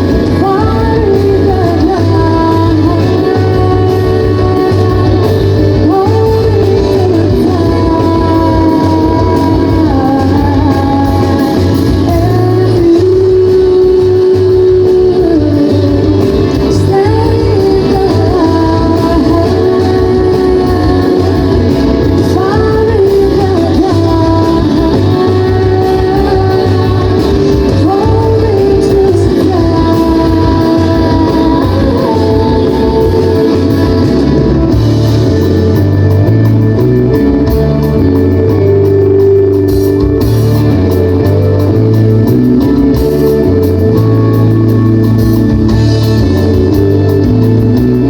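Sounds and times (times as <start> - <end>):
person singing: 0.0 - 36.8
guitar: 0.0 - 48.0
low bass line: 0.0 - 48.0.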